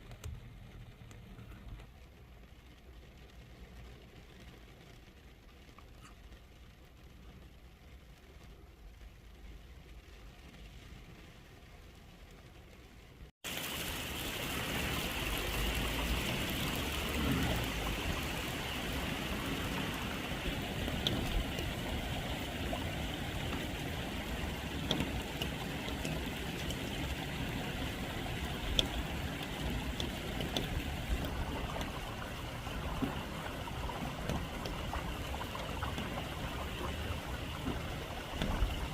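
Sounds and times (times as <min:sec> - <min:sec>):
running and dripping water: 0:00.0 - 0:38.9
steady rain falling: 0:00.0 - 0:38.9
small drip clicks: 0:14.8 - 0:38.9.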